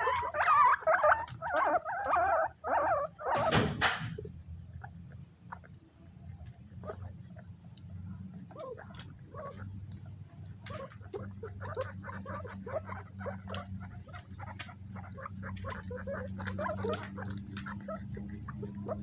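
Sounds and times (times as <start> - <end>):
clicking and pattering: 0.0 - 19.0
guinea pigs squeaking: 0.0 - 19.0
steady low hum: 4.1 - 19.0.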